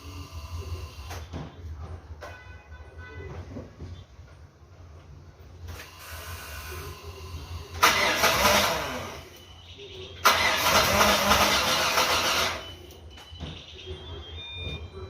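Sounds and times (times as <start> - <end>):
engine cranking on starter: 7.7 - 9.2, 10.2 - 12.7.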